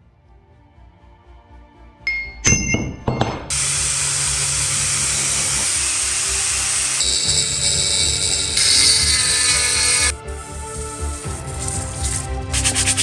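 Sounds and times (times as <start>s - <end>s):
rushing hiss: 3.5s - 10.1s, 11.0s - 13.0s
low hum: 3.5s - 13.0s.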